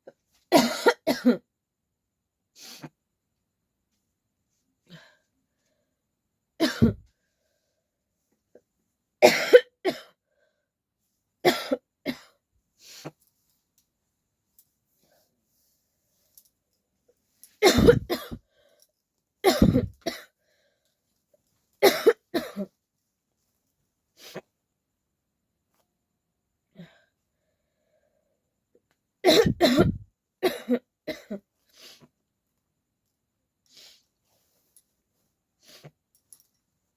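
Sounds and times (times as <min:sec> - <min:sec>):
person coughing harshly: 0:00.5 - 0:01.4, 0:06.6 - 0:07.1, 0:09.2 - 0:10.2, 0:11.4 - 0:12.4, 0:17.6 - 0:18.4, 0:19.4 - 0:20.3, 0:21.8 - 0:22.7, 0:29.2 - 0:31.4.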